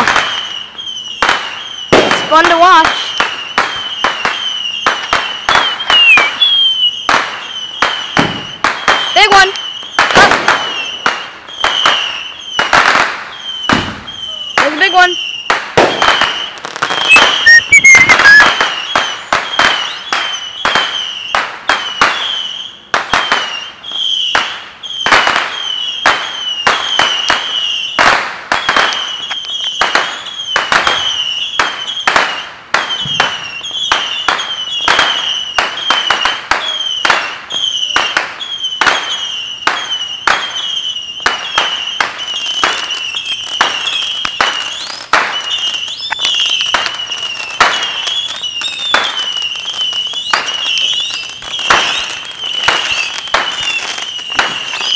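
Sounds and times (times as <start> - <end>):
fireworks bangs: 0.0 - 54.9
high-pitched wavering trill: 6.0 - 6.8, 17.0 - 18.5.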